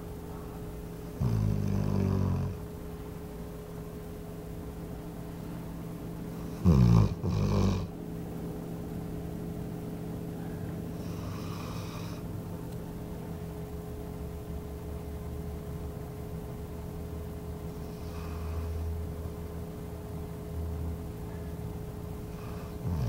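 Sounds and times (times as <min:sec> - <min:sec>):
steady background hum: 0:00.0 - 0:23.0
dog snoring: 0:01.1 - 0:02.6, 0:06.3 - 0:07.9, 0:10.9 - 0:12.3, 0:17.7 - 0:19.0, 0:22.3 - 0:23.0.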